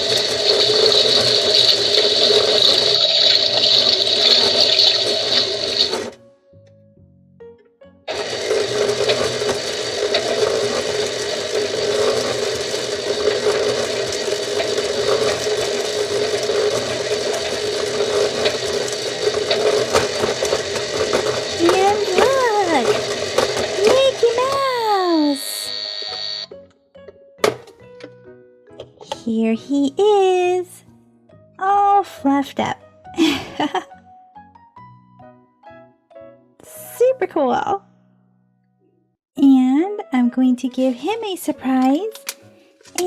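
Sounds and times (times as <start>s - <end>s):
toy washing machine whirring: 0.0s - 6.2s, 8.1s - 26.5s, 42.2s - 43.0s.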